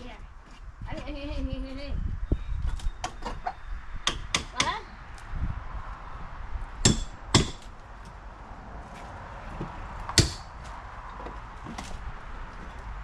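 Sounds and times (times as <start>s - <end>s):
hammer striking wooden decking: 6.8s - 7.7s, 9.6s - 10.6s.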